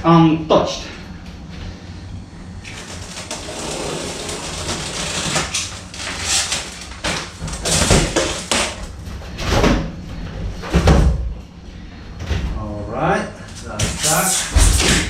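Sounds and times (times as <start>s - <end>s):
scrapes: 2.6s - 8.8s
packaging tearing and rustling: 2.6s - 8.9s.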